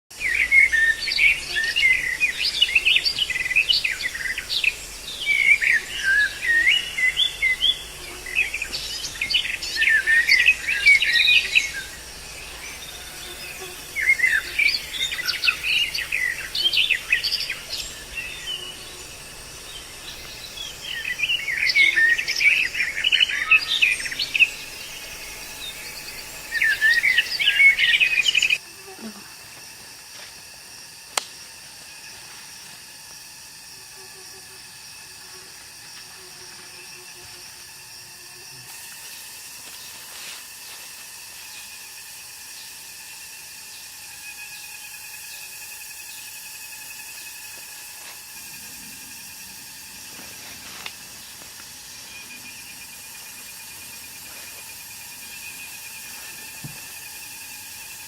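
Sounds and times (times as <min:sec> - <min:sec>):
songbird warbling: 0:00.2 - 0:28.6.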